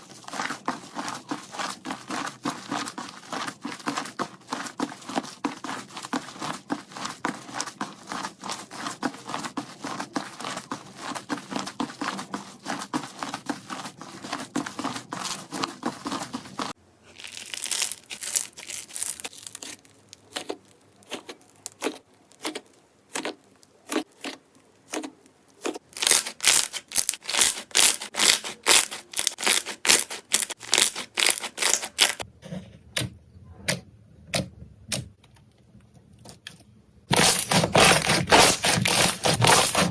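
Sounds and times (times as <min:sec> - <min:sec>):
slime crackling: 0:00.0 - 0:32.2
slime crunching: 0:00.0 - 0:32.2
slime popping: 0:17.2 - 0:23.6.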